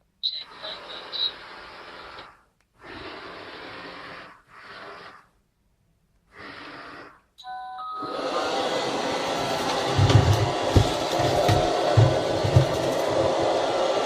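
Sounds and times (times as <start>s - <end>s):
robot vacuum whooshing hiss: 1.1s - 5.3s.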